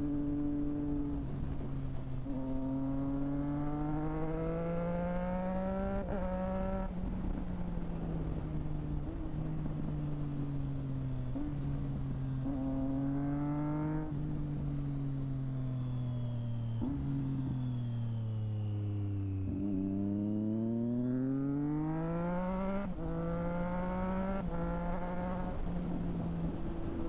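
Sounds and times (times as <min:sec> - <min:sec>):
motorcycle engine revving: 0:19.4 - 0:27.0.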